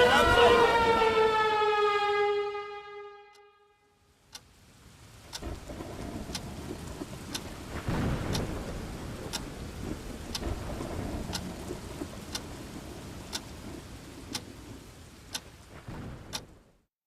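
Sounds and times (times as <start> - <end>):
siren-like descending tone: 0.0 - 3.9
sharp ticks: 6.3 - 6.6, 7.2 - 7.5, 8.3 - 8.5, 9.3 - 9.5, 10.3 - 10.6, 11.3 - 11.6, 12.3 - 12.5.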